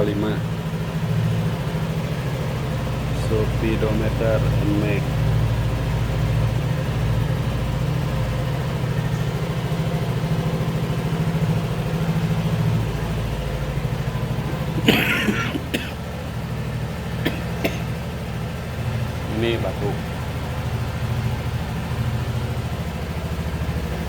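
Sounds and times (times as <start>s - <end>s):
scooter engine idling: 0.0s - 24.0s
person coughing: 14.5s - 16.0s, 17.2s - 17.9s.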